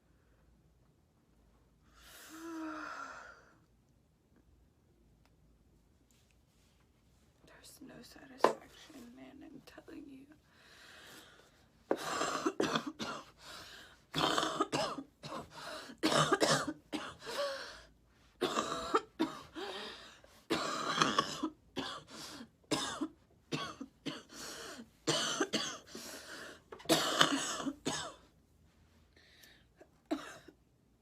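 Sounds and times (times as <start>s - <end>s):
woman coughing: 11.9s - 13.3s, 14.2s - 17.4s, 18.4s - 19.6s, 20.5s - 22.1s, 22.7s - 24.3s, 25.1s - 25.9s, 26.8s - 28.2s, 30.1s - 30.6s.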